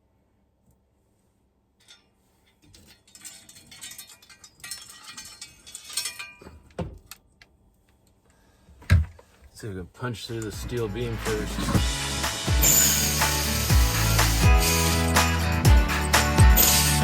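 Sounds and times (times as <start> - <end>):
metal wrenches clinking: 1.8 - 7.2.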